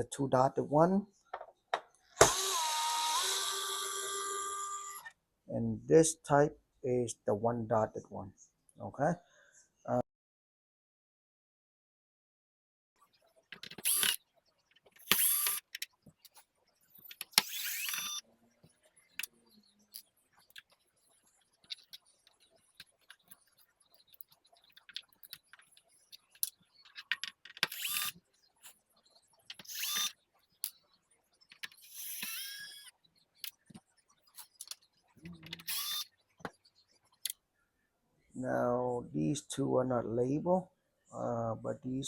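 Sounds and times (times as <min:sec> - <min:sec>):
electric screwdriver whirring: 0:02.2 - 0:05.1, 0:13.8 - 0:14.2, 0:15.0 - 0:15.6, 0:17.4 - 0:18.2, 0:27.7 - 0:28.1, 0:29.6 - 0:30.1, 0:31.8 - 0:32.9, 0:35.6 - 0:36.1
screws and parts rattling: 0:21.5 - 0:28.2.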